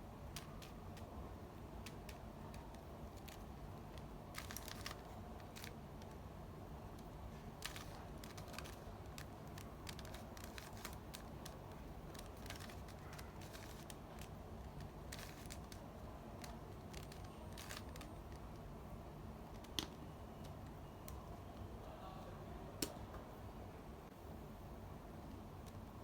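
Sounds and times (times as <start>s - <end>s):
low steady hum: 0.0s - 26.0s
plastic cube clicking: 0.3s - 1.1s, 1.8s - 6.2s, 7.0s - 18.5s.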